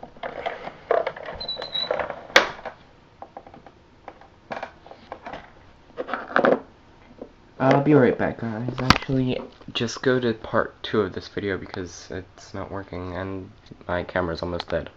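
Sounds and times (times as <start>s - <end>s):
plastic squeak: 0.2s - 2.3s.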